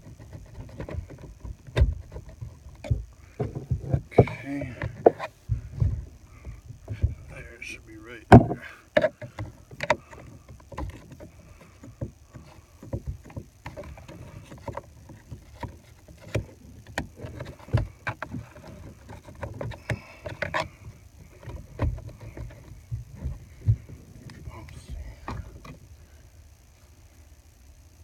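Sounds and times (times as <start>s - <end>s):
tool knocking and scraping: 0.0s - 25.9s
low handling rumble: 19.8s - 26.6s.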